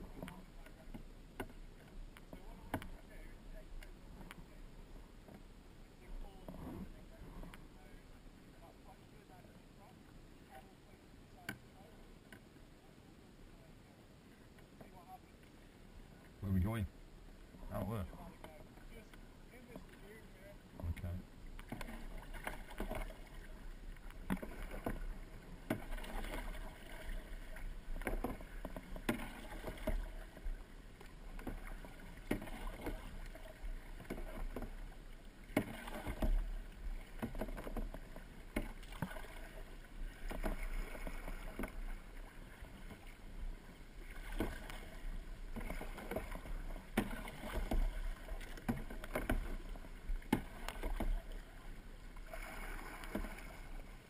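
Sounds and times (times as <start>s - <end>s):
paddle strokes splashing water: 0.0s - 12.7s, 13.5s - 54.0s.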